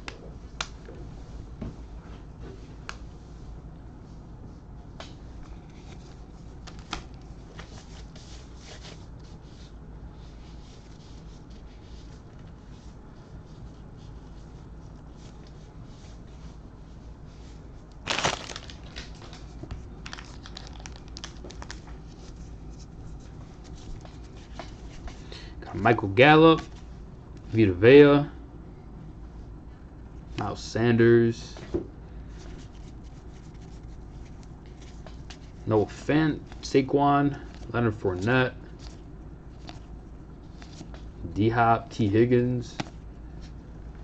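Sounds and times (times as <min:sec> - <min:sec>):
cards being handled: 0:05.0 - 0:09.7, 0:17.9 - 0:25.3, 0:32.3 - 0:36.8, 0:37.4 - 0:41.1, 0:42.6 - 0:43.6
wrapper crinkling and tearing: 0:18.0 - 0:21.9.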